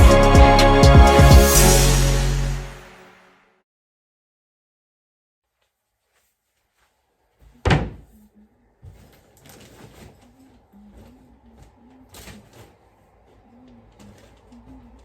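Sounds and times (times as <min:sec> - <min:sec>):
loud thump: 0:07.6 - 0:08.1.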